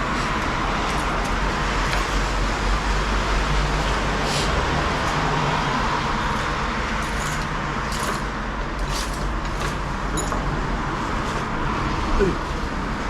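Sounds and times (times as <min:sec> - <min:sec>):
road traffic noise: 0:00.0 - 0:13.0.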